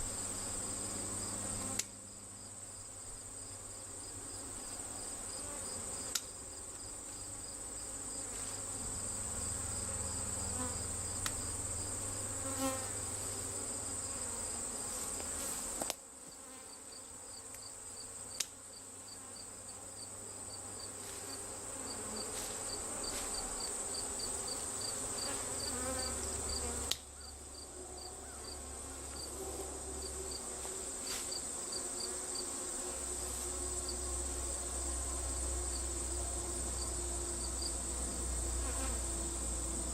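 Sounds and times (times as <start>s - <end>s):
crickets chirring: 0.0s - 7.6s, 19.1s - 39.9s
honeybee swarm buzzing: 0.0s - 27.0s, 28.6s - 39.9s.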